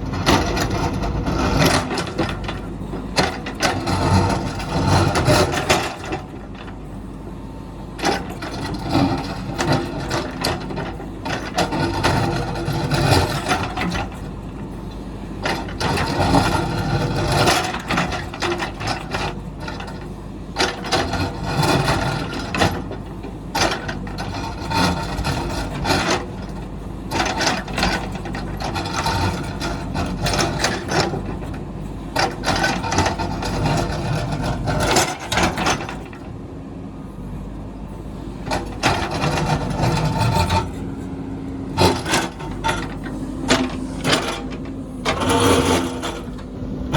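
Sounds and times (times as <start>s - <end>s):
diesel engine running: 0.0s - 46.9s
steel bucket scraping rock: 38.5s - 41.1s, 41.7s - 46.9s.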